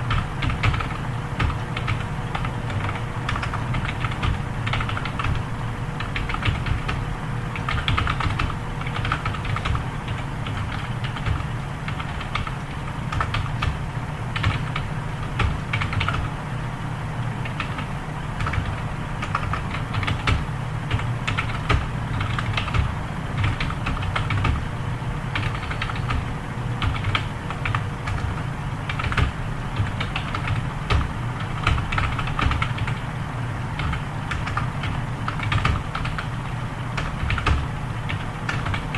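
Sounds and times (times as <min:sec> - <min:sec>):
low steady hum: 0:00.0 - 0:38.9.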